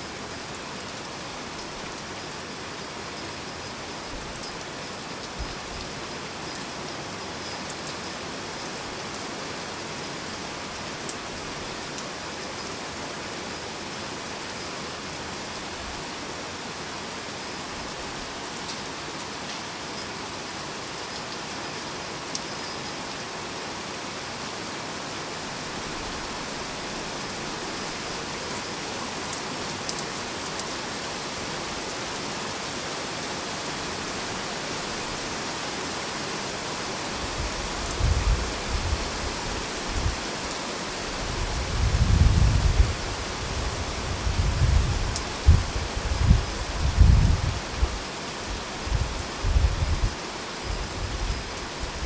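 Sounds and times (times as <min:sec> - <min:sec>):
heavy rain falling: 0:00.0 - 0:52.0
sharp raindrop ticks: 0:26.5 - 0:30.8.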